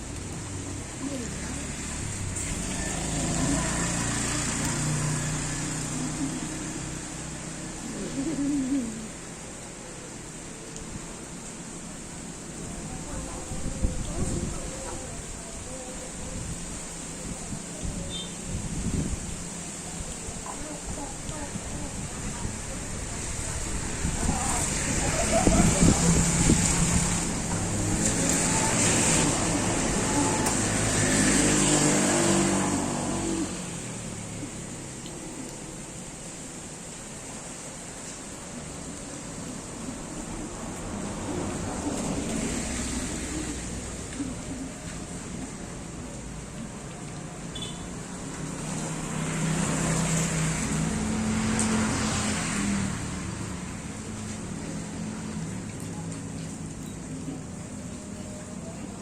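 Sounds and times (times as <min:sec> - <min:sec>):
vehicle engine passing by: 0:00.7 - 0:09.5, 0:20.9 - 0:35.9, 0:38.8 - 0:45.9, 0:48.2 - 0:59.0
vehicle driving past: 0:01.3 - 0:08.2, 0:24.0 - 0:35.0.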